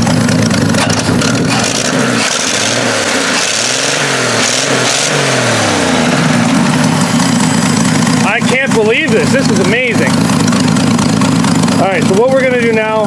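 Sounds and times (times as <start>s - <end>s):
truck engine running and revving: 0.0s - 13.0s.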